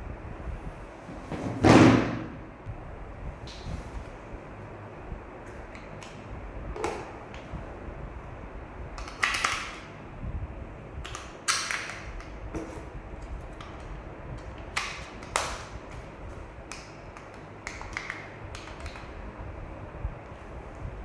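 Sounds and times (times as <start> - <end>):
steady low rumble: 2.3 - 9.0, 9.8 - 11.1
plastic toy truck clicking and tapping: 16.7 - 19.1.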